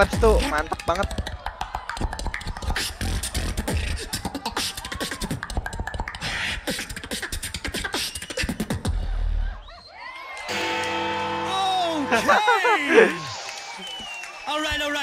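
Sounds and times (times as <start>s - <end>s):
beatboxed bass kicks: 0.0s - 9.5s
beatboxing mouth clicks: 0.3s - 9.0s.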